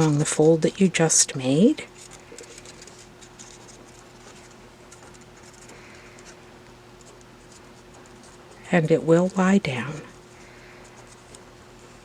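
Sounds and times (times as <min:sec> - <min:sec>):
thin steady hum: 0:00.0 - 0:12.0
paper crinkling and creasing: 0:01.9 - 0:06.4.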